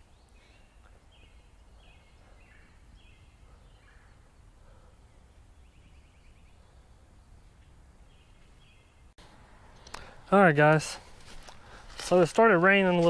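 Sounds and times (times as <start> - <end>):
faint bird calls: 0.2 - 9.1.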